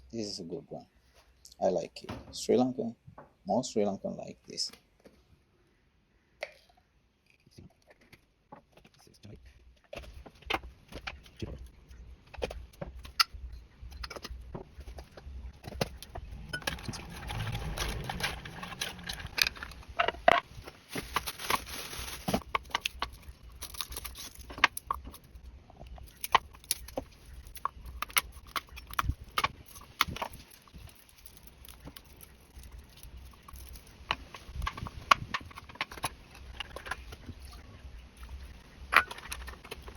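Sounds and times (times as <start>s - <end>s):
kitchen utensils clicking and clinking: 16.4s - 20.4s, 38.9s - 39.9s.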